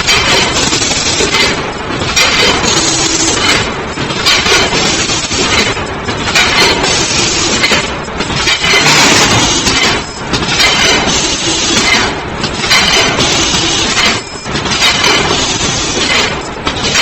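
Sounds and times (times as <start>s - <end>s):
machine clattering: 0.0s - 17.0s.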